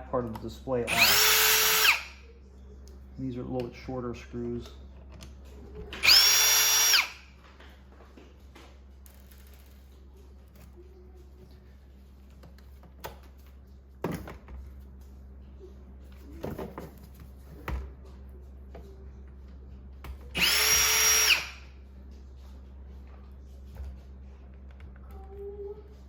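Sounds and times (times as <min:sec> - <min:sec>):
power driver motor whine: 0:00.9 - 0:02.2, 0:06.0 - 0:07.2, 0:20.4 - 0:21.6.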